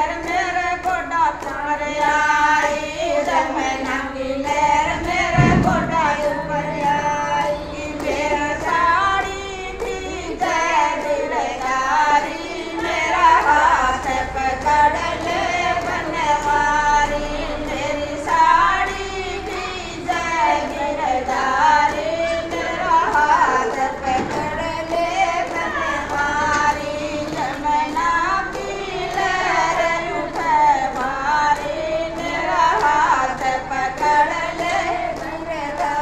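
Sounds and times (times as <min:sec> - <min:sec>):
devotional folk song singing: 0:00.0 - 0:36.0
low thump: 0:05.0 - 0:08.0.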